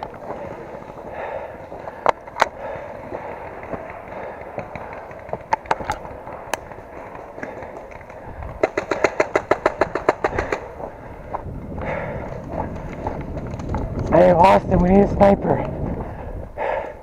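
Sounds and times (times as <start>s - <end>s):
airsoft gun firing: 8.6s - 10.7s.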